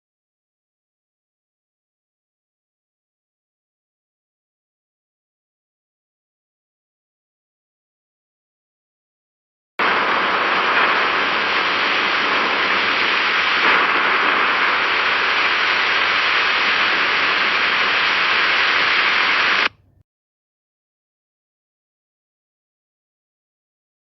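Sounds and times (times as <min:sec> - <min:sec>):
heavy rain: 0:09.8 - 0:19.8.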